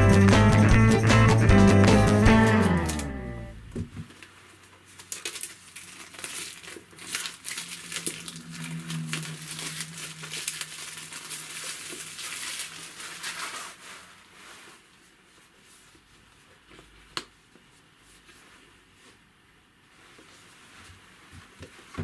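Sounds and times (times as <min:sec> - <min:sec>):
wrapping material crinkling: 0:04.2 - 0:17.0.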